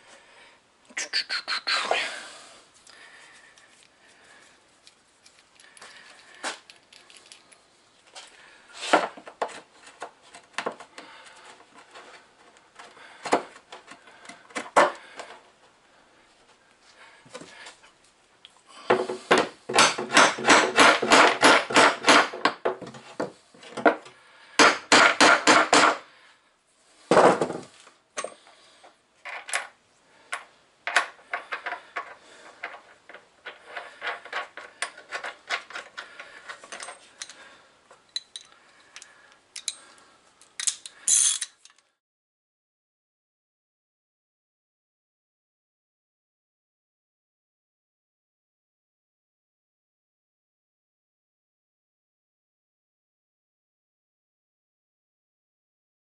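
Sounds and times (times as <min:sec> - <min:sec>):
hand tool clicks and knocks: 0:38.0 - 0:39.8.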